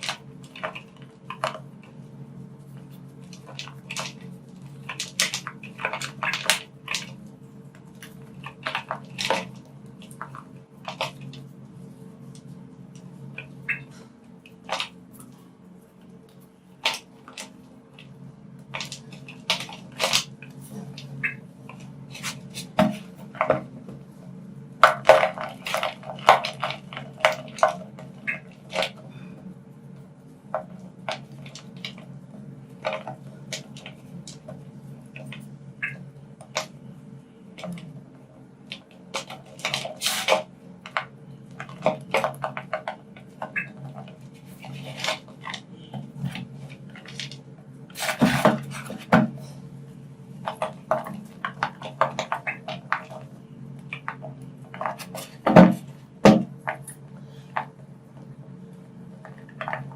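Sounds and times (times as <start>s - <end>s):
steady low hum: 0.0s - 59.9s.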